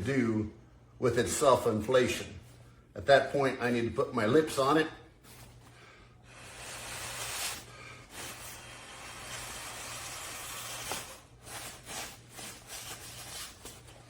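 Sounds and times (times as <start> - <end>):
person blowing into a valve: 6.3 - 12.1
air hissing through a valve: 6.3 - 12.2.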